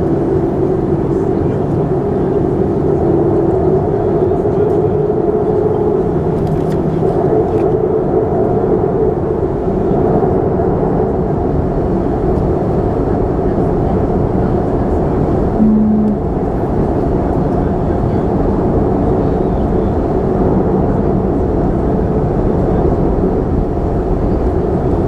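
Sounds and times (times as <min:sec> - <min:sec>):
jet engines roaring in cabin: 0:00.0 - 0:25.0
short low tone: 0:15.6 - 0:16.8.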